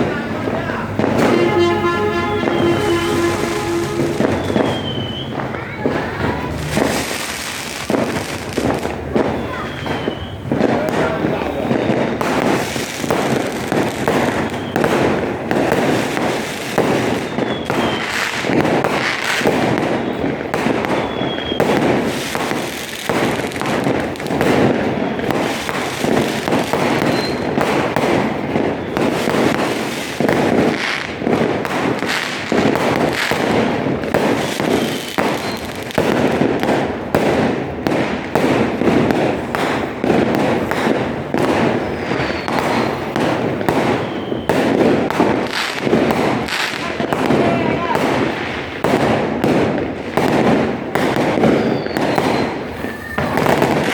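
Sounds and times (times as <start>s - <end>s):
fireworks bangs and crackling: 0.0s - 53.9s.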